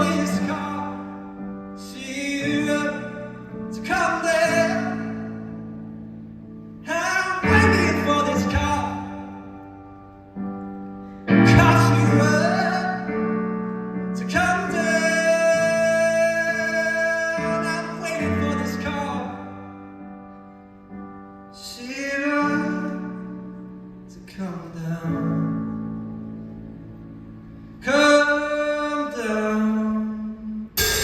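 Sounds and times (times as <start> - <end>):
man singing: 0.0 - 5.6, 6.8 - 9.5, 11.3 - 13.4, 14.1 - 19.7, 21.6 - 23.4, 24.1 - 25.8, 27.8 - 30.8.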